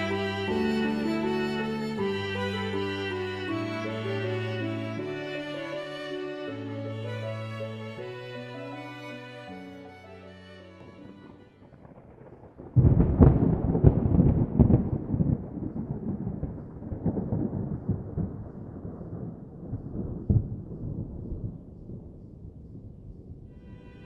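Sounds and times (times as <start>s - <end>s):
loud crackling low rumble: 11.4s - 24.0s.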